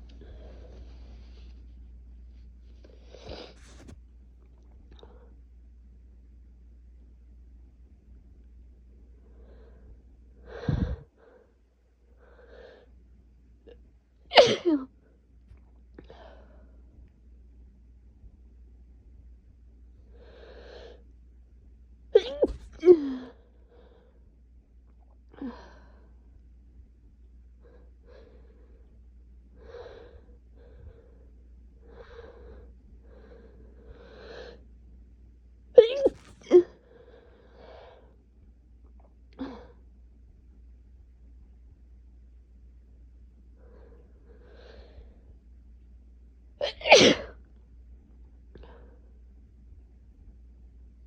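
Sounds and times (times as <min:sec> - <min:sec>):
breathing: 0:00.2 - 0:01.7, 0:09.2 - 0:12.9, 0:16.0 - 0:16.9, 0:20.1 - 0:21.0, 0:23.6 - 0:24.3, 0:25.4 - 0:26.3, 0:27.6 - 0:29.0, 0:29.6 - 0:34.6, 0:36.8 - 0:38.2, 0:43.5 - 0:45.4, 0:48.6 - 0:49.2
person gasping breaths: 0:09.4 - 0:11.5
person sneezing: 0:14.3 - 0:14.8, 0:22.2 - 0:23.2, 0:35.8 - 0:36.7, 0:46.6 - 0:47.3.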